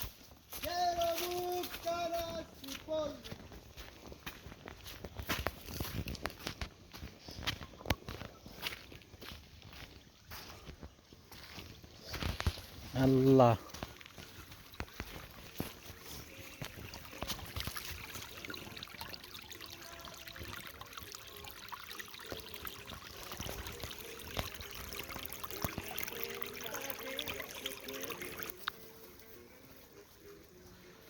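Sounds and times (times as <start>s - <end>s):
water trickling: 12.4s - 28.8s.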